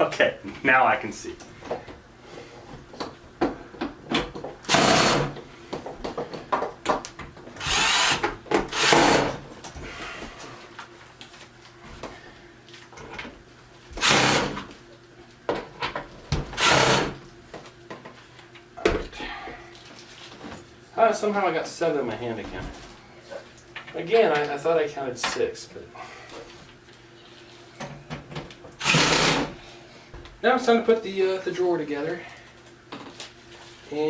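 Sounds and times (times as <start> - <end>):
power drill driving fasteners: 4.7 - 5.4, 7.6 - 9.4, 14.0 - 14.7, 16.6 - 17.2, 28.8 - 29.5.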